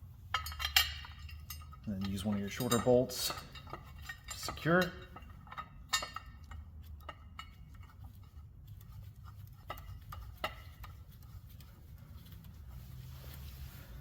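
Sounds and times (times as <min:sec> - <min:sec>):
low steady hum: 0:00.0 - 0:14.0
tools clicking on metal: 0:00.4 - 0:11.0.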